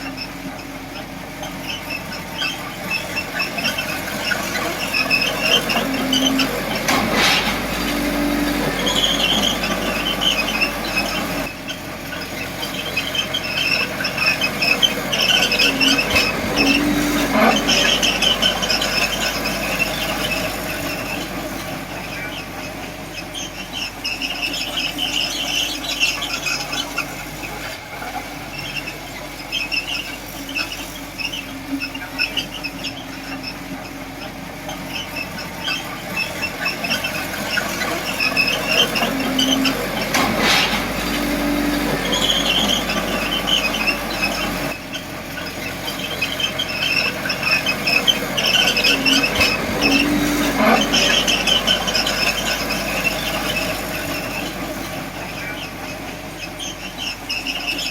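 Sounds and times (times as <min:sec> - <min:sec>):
bulldozer engine: 0:00.0 - 0:57.9
steel tracks squealing: 0:00.0 - 0:57.9.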